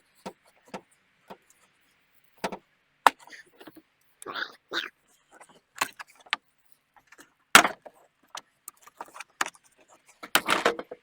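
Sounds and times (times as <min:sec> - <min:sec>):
clicks and scrapes on plastic: 0:02.4 - 0:03.8, 0:05.4 - 0:11.0.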